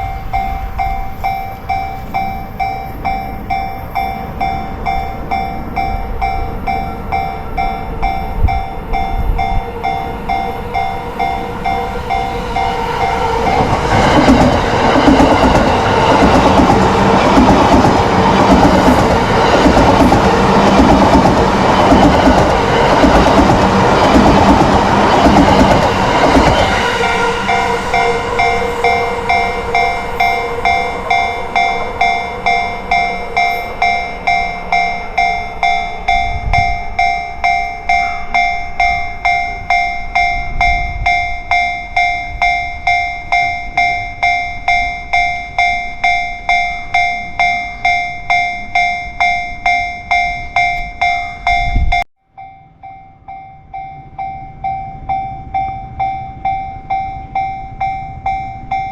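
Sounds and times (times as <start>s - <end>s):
train rushing past: 0.0s - 45.2s
crossing warning bell ringing: 0.0s - 58.9s.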